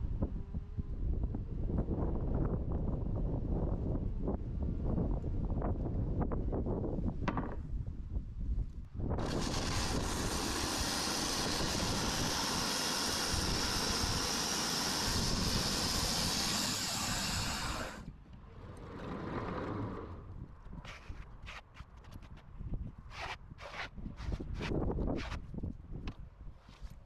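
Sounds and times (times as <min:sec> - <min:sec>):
sawmill cutting log: 0:09.2 - 0:18.1.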